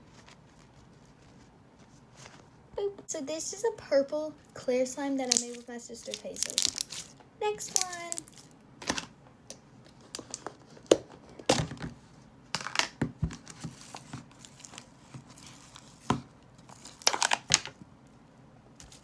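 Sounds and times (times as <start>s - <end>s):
plastic container crinkling and clicking: 5.2s - 7.1s, 7.7s - 9.1s, 16.8s - 17.8s
slime crackling: 5.2s - 9.0s.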